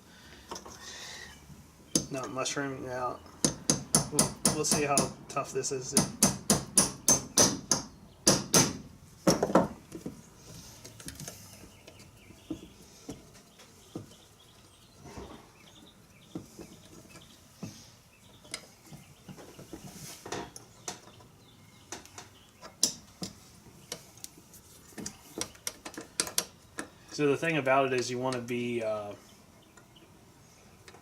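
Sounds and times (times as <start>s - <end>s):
hammer striking a pin punch: 3.4s - 5.2s, 6.0s - 9.7s.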